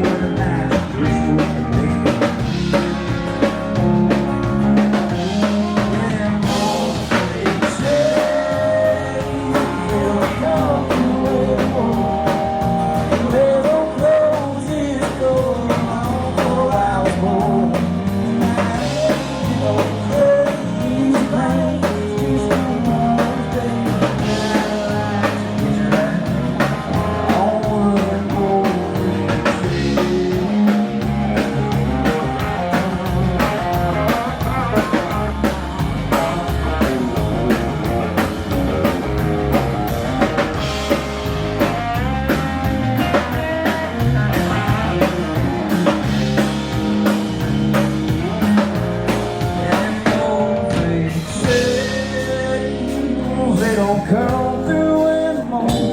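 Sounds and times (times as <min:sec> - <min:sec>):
drum beat: 0:00.0 - 0:51.8
bass: 0:00.0 - 0:55.9
guitar lead: 0:00.0 - 0:55.9.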